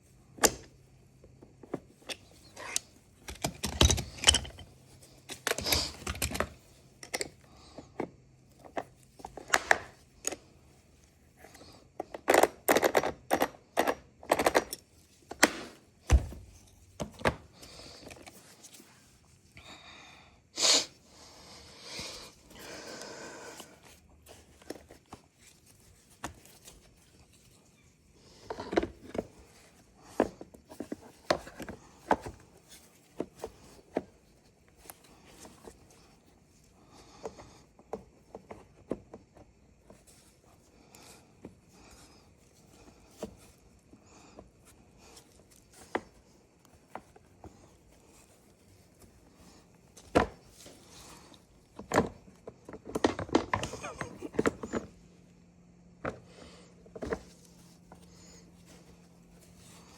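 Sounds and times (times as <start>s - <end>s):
hand tools clicking and knocking: 2.1s - 4.7s, 12.0s - 16.3s.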